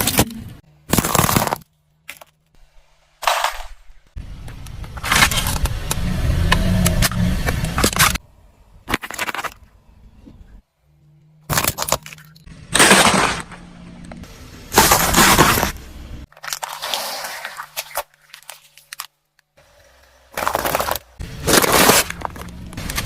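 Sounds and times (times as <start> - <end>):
plastic toys crunching under tyre: 0.0 - 2.4, 4.4 - 8.2, 8.8 - 9.7, 11.4 - 19.4, 20.3 - 23.0
car engine low hum: 4.2 - 8.7, 13.4 - 16.3.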